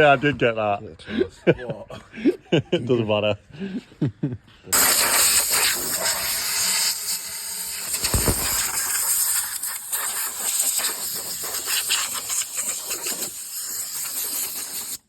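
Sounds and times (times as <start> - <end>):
spraying hiss: 4.8 - 15.0
low thump: 8.0 - 9.0.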